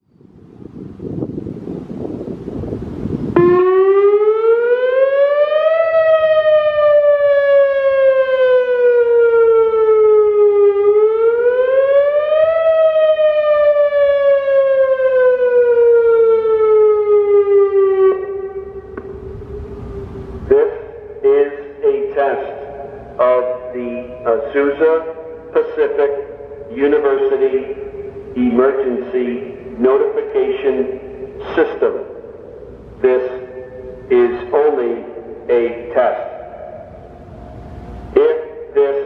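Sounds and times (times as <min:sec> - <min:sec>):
wind on microphone: 0:00.0 - 0:04.0, 0:18.7 - 0:20.6
warning siren slow wail: 0:03.2 - 0:38.8.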